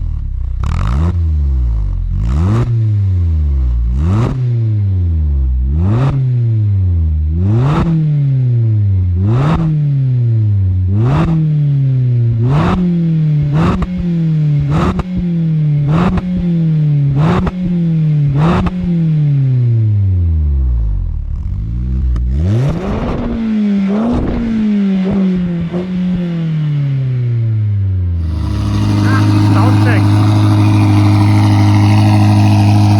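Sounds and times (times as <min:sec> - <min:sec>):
car engine revving: 0:21.2 - 0:26.5, 0:28.1 - 0:32.9.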